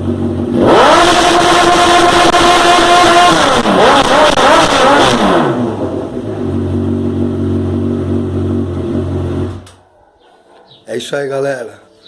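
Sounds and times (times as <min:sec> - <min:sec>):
motorcycle engine idling: 0:00.0 - 0:00.6, 0:06.1 - 0:09.6
motorcycle engine revving: 0:00.0 - 0:09.8.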